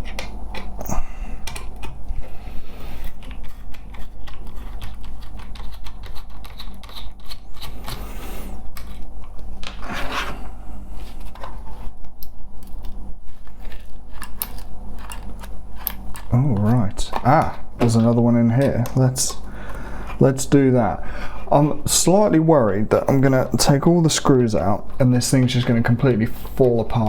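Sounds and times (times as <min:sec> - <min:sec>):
steady low hum: 0:00.0 - 0:27.0
scrapes of small parts: 0:02.2 - 0:09.1, 0:13.2 - 0:17.3.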